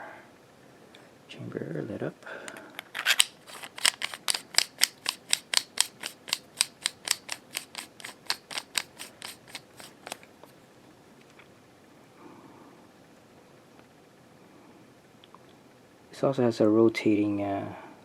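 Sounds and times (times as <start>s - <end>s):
sharp mechanical clicks: 2.8s - 10.2s.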